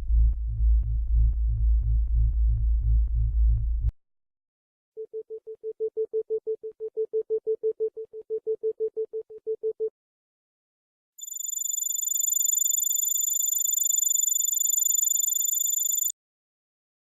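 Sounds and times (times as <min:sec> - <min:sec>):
deeper pulsing tone: 0:00.0 - 0:03.9.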